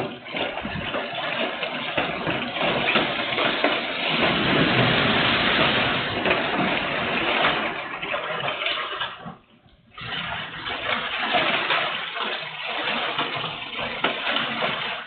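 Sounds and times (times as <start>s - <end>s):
heavy rain: 3.3s - 7.9s.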